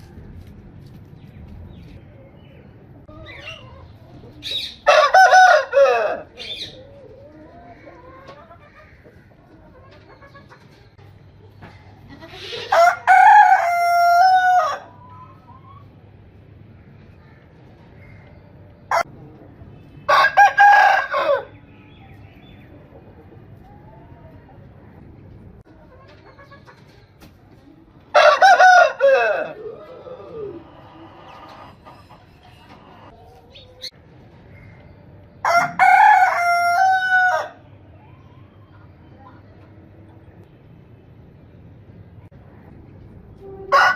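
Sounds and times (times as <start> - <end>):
rooster crowing: 4.8 - 6.4, 12.7 - 15.0, 20.1 - 21.5, 28.1 - 31.0, 35.4 - 37.6.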